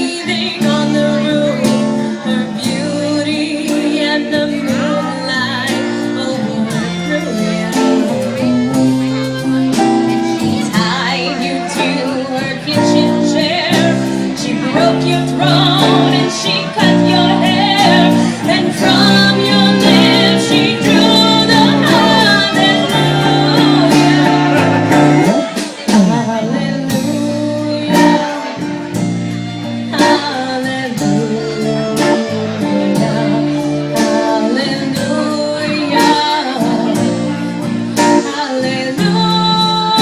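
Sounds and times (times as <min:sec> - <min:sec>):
guitar accompaniment: 0:00.0 - 0:40.0
people singing: 0:10.4 - 0:28.7, 0:29.9 - 0:40.0.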